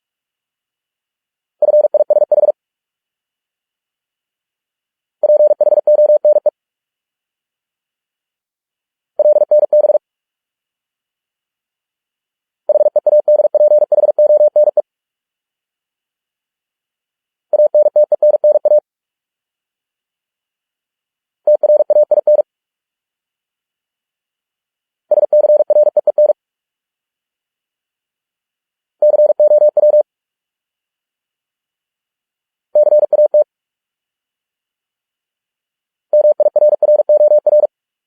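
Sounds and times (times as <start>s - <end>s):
morse code beeps: 17.6s - 18.8s, 29.0s - 30.0s, 36.2s - 37.7s.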